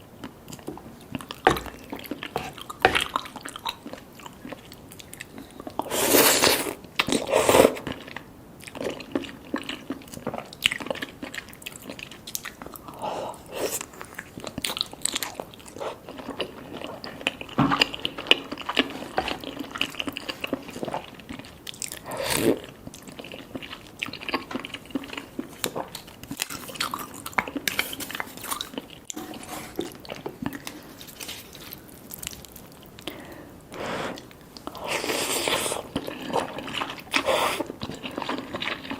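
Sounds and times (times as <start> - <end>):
chewing and wet mouth smacks: 22.8 - 29.2.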